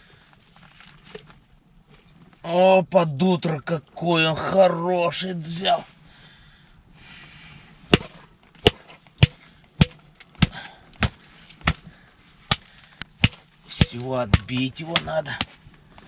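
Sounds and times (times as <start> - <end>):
sharp hard knocks: 8.0 - 11.9, 12.5 - 15.6.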